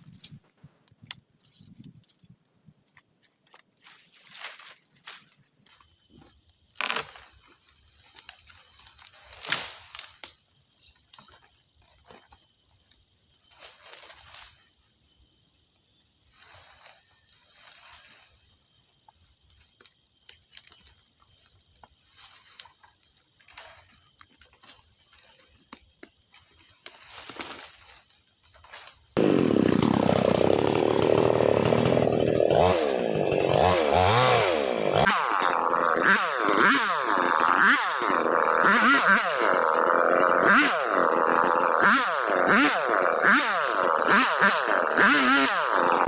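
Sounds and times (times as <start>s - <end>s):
rustling in undergrowth: 3.2s - 5.8s, 20.4s - 29.6s.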